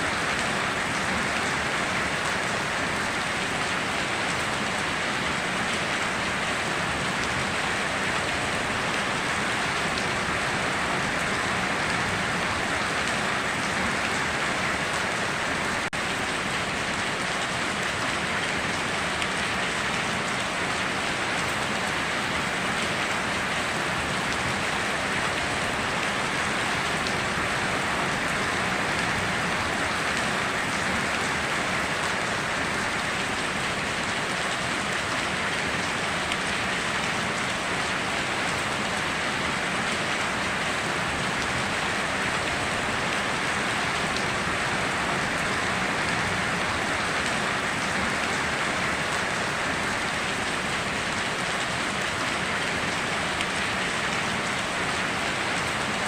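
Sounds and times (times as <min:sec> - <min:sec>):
heavy rain pattering: 0:00.0 - 0:56.0.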